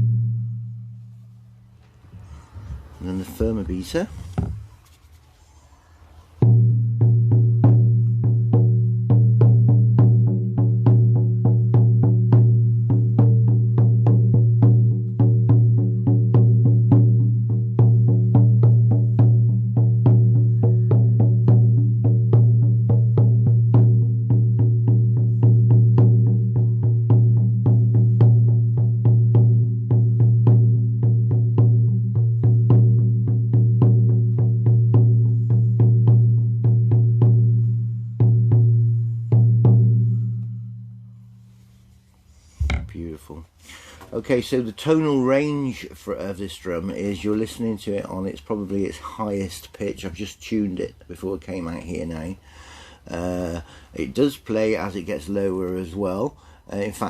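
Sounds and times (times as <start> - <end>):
frame drum beaten: 6.4 - 40.2.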